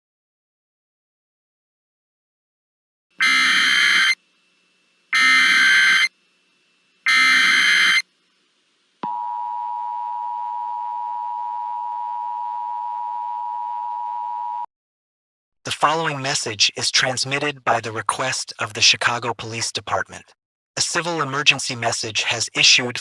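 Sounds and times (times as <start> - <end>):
digital data tone bursts: 3.2 - 4.2, 5.1 - 6.1, 7.0 - 8.0
two-tone attention signal: 3.2 - 4.2, 5.2 - 6.1, 7.1 - 8.0.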